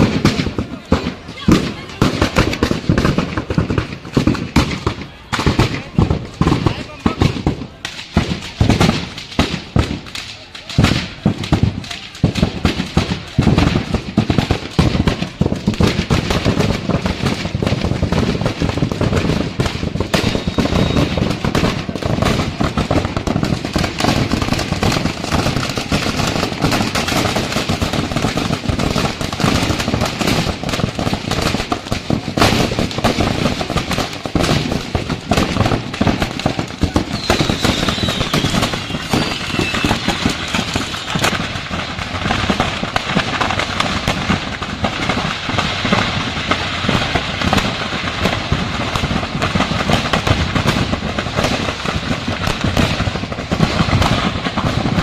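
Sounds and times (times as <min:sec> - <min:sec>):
firecrackers crackling and popping: 0:00.0 - 0:55.0.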